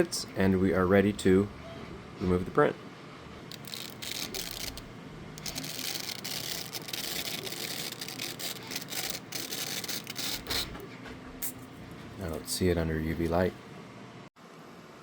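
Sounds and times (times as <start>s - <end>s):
print scraping off build plate: 3.5s - 10.8s.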